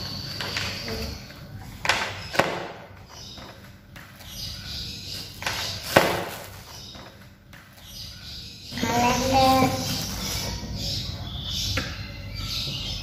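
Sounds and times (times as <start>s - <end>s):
paper and packaging rustling: 5.2s - 7.9s, 9.1s - 10.6s.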